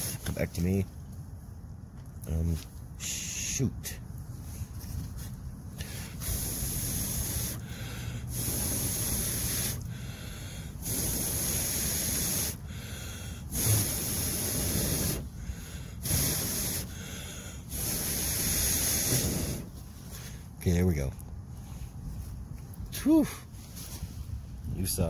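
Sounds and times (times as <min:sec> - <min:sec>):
person blowing on embers: 0:00.0 - 0:00.4, 0:04.4 - 0:20.4.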